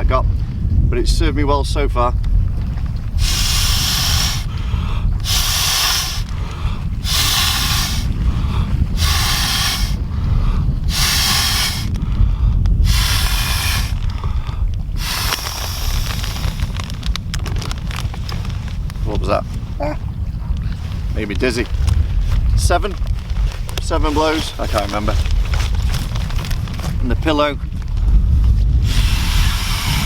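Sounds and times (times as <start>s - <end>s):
wind rumble on microphone: 0.0s - 30.0s
man blowing into a mat valve: 3.1s - 17.0s, 28.8s - 30.0s.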